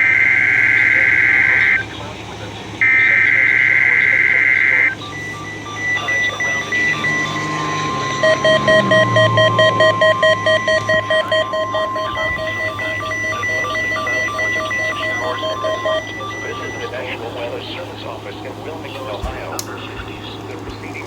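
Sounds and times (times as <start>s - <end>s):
rapid pulsing beeps: 0.0s - 19.6s
steady warning alarm tone: 0.0s - 21.0s.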